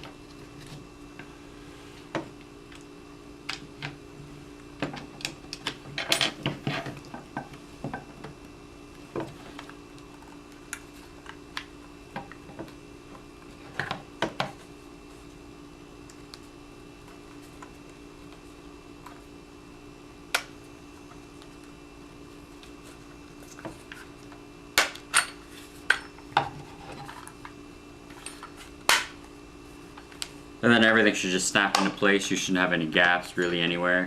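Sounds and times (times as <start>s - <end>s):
faint steady hum: 0.0s - 34.0s.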